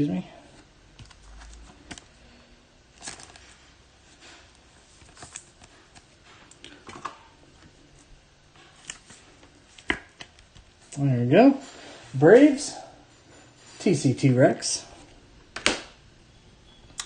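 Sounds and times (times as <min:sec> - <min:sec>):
trading cards clicking and rustling: 0:00.9 - 0:02.2, 0:02.9 - 0:07.8, 0:08.6 - 0:11.0.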